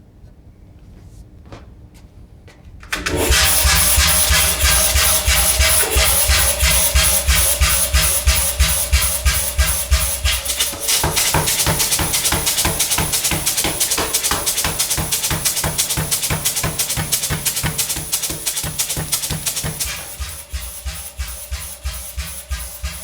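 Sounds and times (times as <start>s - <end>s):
pneumatic power hammer blows: 2.9s - 23.0s.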